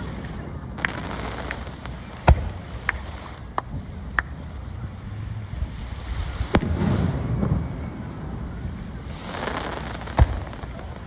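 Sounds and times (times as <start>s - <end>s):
faint firework bang: 0.0s - 4.4s, 6.2s - 11.0s
rumble of distant firework bursts: 0.0s - 11.0s
firework shell boom: 10.1s - 11.0s.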